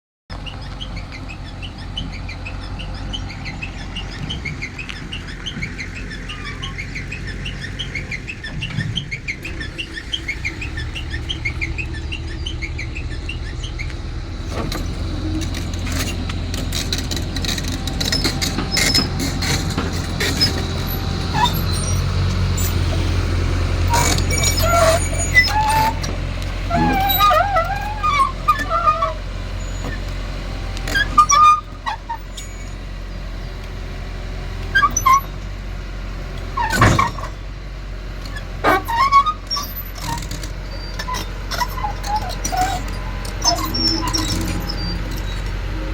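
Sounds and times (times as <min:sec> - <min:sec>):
excavator diesel engine running: 0:00.3 - 0:45.9
birds chirping: 0:00.4 - 0:08.8, 0:10.6 - 0:15.6
sharp knocks and clatter: 0:14.4 - 0:22.4.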